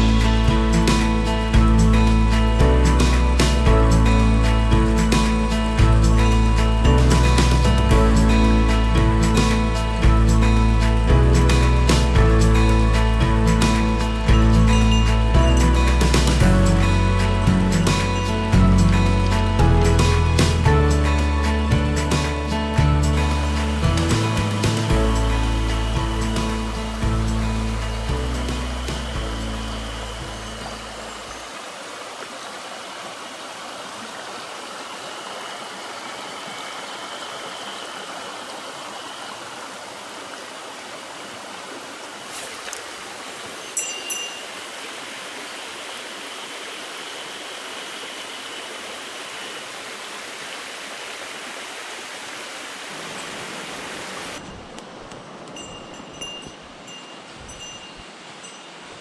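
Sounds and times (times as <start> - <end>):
mountain stream running: 0.0 - 59.0
little bell tinkling: 9.8 - 20.0, 43.6 - 44.8, 55.6 - 58.9.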